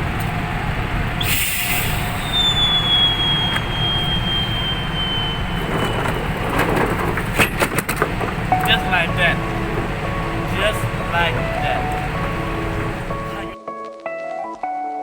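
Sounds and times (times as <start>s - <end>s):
truck engine running: 0.0s - 13.6s
short hiss: 1.2s - 2.9s
high squeal dropping in pitch: 1.2s - 6.9s
knocks and rattles: 5.5s - 13.2s.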